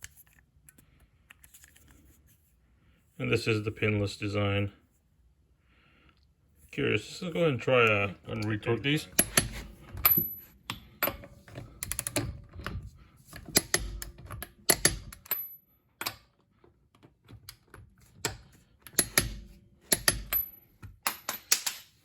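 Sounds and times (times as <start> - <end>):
metal tools clicking and clinking: 7.8 - 12.8, 18.2 - 21.9.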